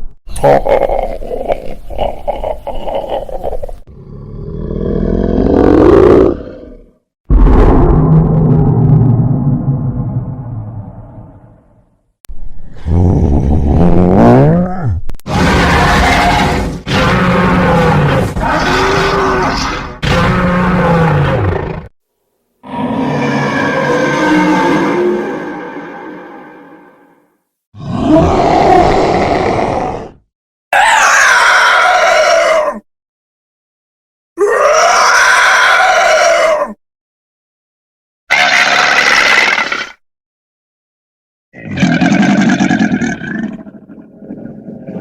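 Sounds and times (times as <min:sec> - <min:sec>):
monster growling roars: 0:12.7 - 0:21.9, 0:22.6 - 0:27.0, 0:27.8 - 0:30.2.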